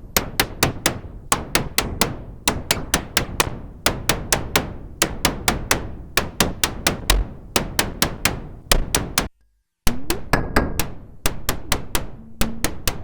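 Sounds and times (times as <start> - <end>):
sharp electronic clicks: 0.4 - 9.3.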